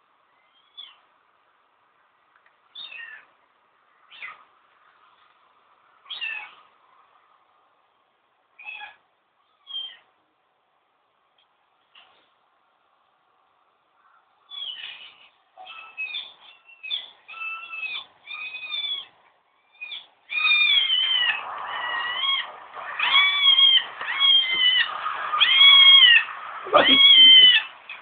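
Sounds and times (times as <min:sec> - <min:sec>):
dog whining with mewing cries: 0:15.6 - 0:27.8.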